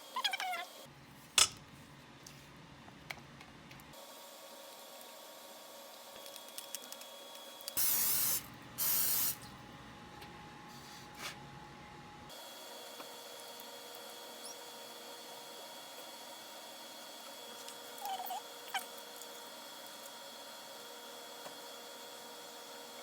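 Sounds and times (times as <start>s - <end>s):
aerosol spray blasts: 7.8s - 9.4s.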